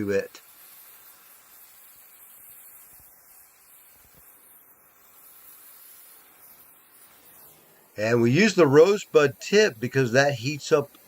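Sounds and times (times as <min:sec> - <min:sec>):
torch hissing: 0:00.0 - 0:11.0.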